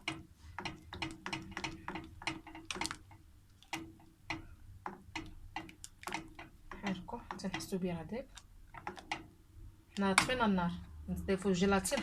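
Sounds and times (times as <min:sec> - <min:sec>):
utensil tapping and scraping a pan: 0:00.0 - 0:09.4.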